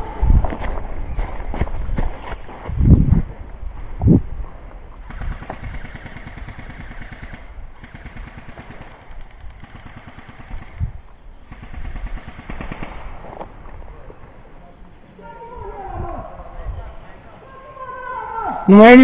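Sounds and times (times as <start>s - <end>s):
footsteps through undergrowth: 0.4s - 3.9s.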